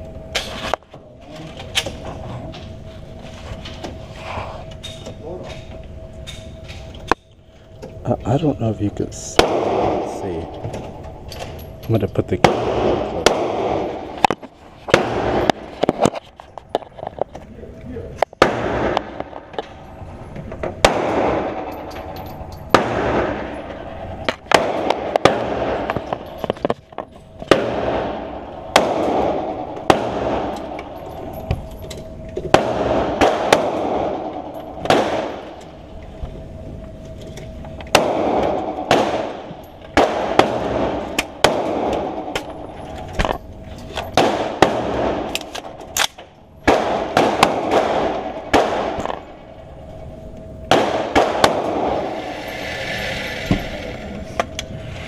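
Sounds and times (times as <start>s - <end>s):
rifle gunshots with echo: 9.3s - 11.2s, 12.4s - 14.3s, 14.9s - 15.8s, 18.4s - 19.5s, 20.7s - 26.4s, 27.4s - 31.4s, 32.5s - 35.6s, 37.9s - 42.8s, 44.1s - 49.6s, 50.7s - 52.2s.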